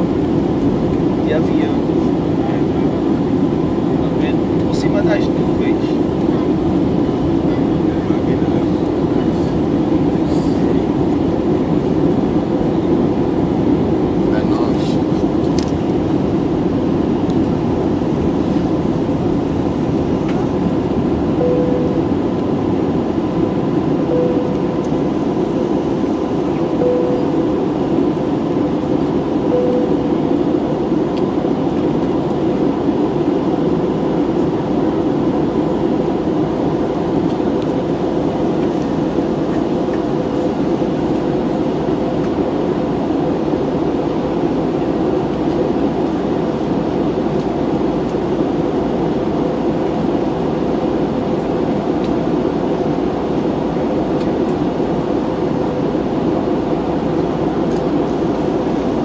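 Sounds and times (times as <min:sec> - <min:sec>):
engine and airflow rush: 0:00.0 - 0:59.0
faint steady hum: 0:16.2 - 0:32.0.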